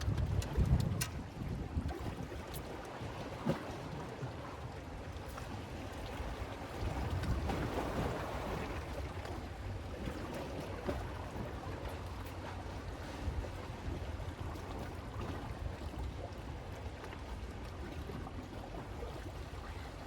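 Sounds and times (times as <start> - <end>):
wind buffeting microphone: 0.0 - 2.6
seawater washing against breakwater: 0.0 - 11.6.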